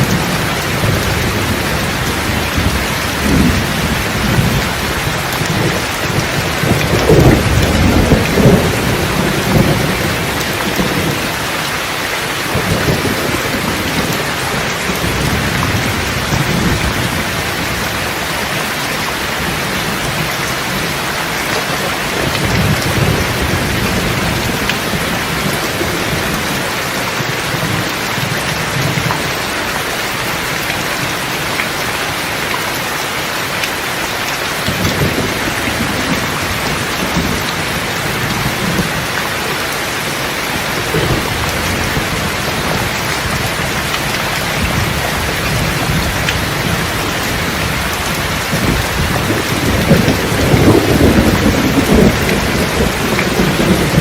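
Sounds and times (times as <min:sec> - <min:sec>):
rolling thunder: 0:00.0 - 0:18.5, 0:19.3 - 0:29.4, 0:40.0 - 0:54.0
heavy rain: 0:00.0 - 0:54.0.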